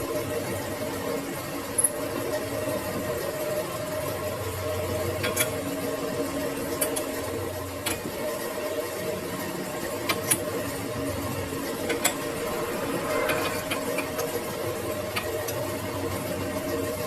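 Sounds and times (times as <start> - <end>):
metal lathe humming: 4.7 - 17.0.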